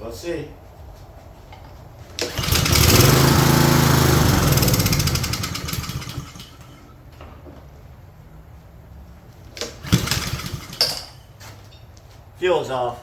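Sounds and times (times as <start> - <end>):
lawn mower pull start: 2.1 - 6.9, 9.5 - 11.2
small engine running and dying: 2.2 - 6.9, 9.8 - 10.8.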